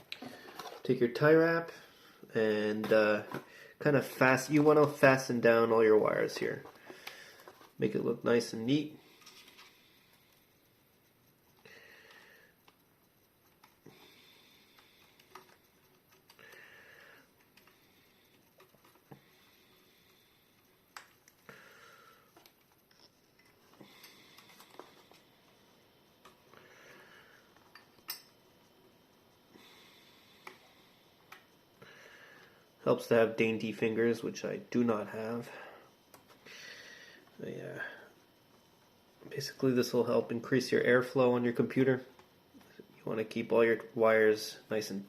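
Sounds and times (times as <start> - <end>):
soft breaths: 8.9 - 27.7, 28.6 - 32.8, 35.2 - 39.2.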